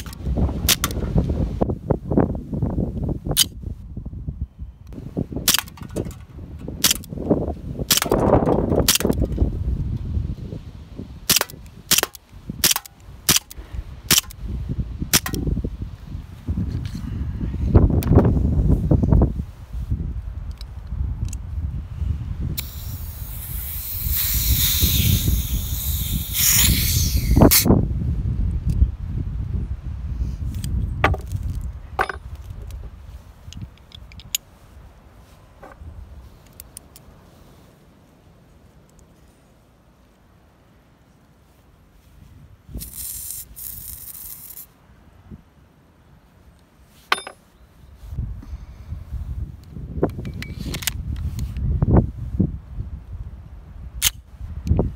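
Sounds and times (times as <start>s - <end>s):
sharp metallic clicks: 0.0s - 1.0s, 5.4s - 7.1s, 7.9s - 9.4s, 11.3s - 14.4s, 15.1s - 15.4s
wind rumble on microphone: 0.0s - 38.6s, 41.5s - 45.6s, 47.8s - 54.9s
bb pistol shots: 0.7s - 1.0s, 5.4s - 6.2s, 6.8s - 7.1s, 7.9s - 9.2s, 11.3s - 14.4s, 15.1s - 15.4s.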